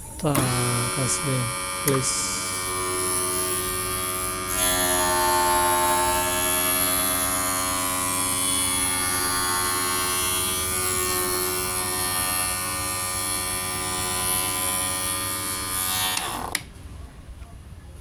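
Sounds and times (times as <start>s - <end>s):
lens grooving machine motor hum: 0.0s - 7.2s.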